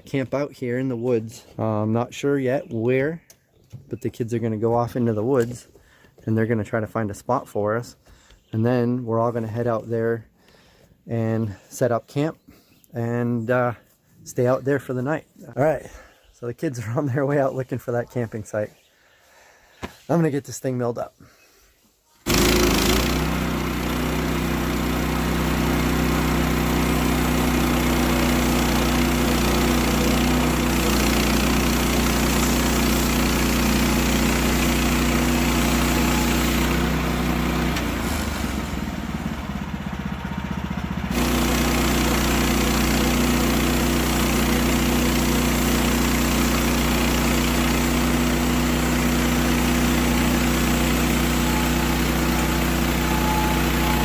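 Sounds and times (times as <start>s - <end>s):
sawmill engine running: 22.3s - 54.0s.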